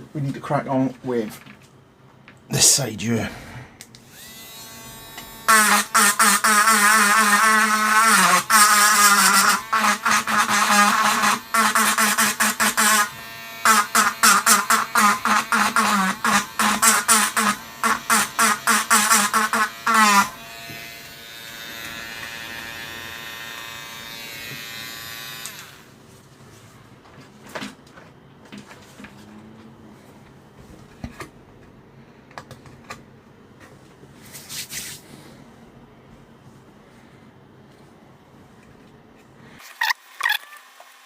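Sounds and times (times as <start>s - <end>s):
small electric motor buzzing: 4.0s - 25.9s.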